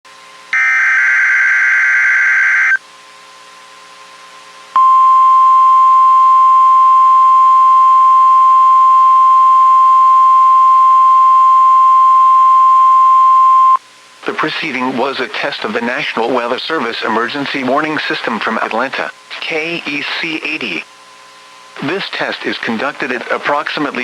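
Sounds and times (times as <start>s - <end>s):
faint hum: 0.1s - 24.0s
digital data screech: 0.6s - 2.8s
weather alarm steady beep: 0.6s - 2.8s, 4.8s - 13.8s.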